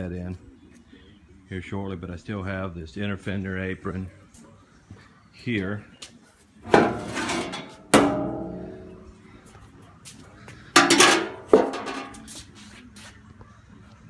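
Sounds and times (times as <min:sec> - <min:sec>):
metal parts clanging: 0:06.7 - 0:08.2.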